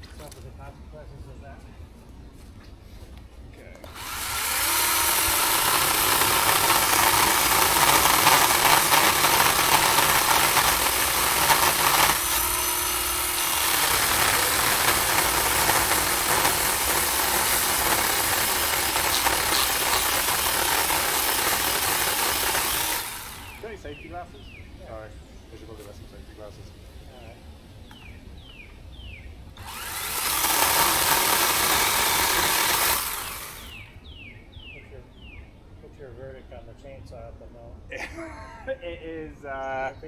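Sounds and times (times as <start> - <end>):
electric chainsaw cutting wood: 3.8 - 23.8, 29.6 - 33.9.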